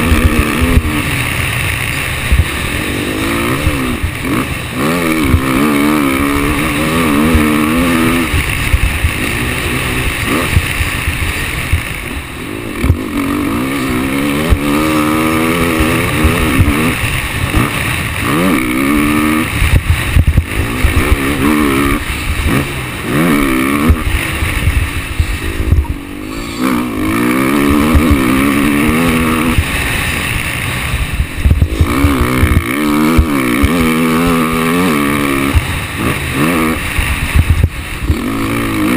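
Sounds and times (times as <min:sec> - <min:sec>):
motocross bike engine revving: 0:00.0 - 0:38.9
low rumble and knocks: 0:31.1 - 0:33.4.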